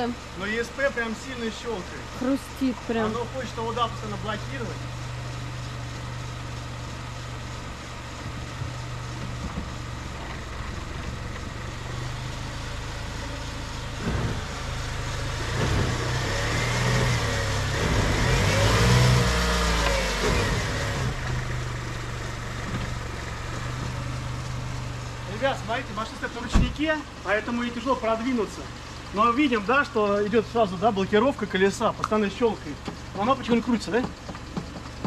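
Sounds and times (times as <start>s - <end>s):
car engine running: 0.0s - 35.0s
wheel brake clicking and crunching: 31.9s - 35.0s.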